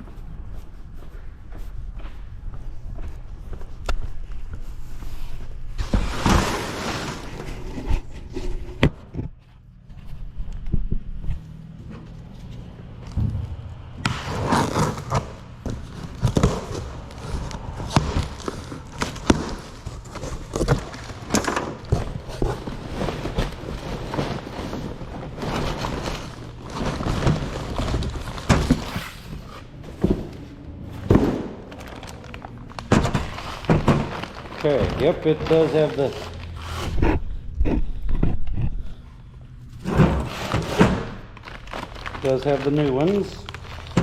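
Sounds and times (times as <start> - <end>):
low hum: 7.4 - 16.3, 36.2 - 40.0.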